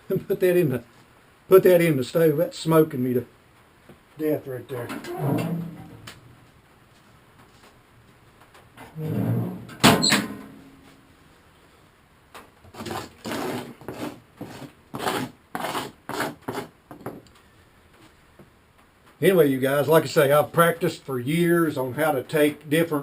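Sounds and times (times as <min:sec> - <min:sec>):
metal stove door creaking: 0:04.8 - 0:06.3, 0:08.9 - 0:10.4.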